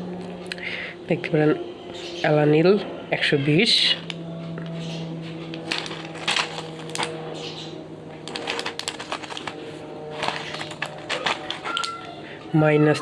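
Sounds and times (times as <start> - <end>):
steady low hum: 0.0 - 13.0
blister strips clicking and crinkling: 5.4 - 7.2, 8.2 - 12.2.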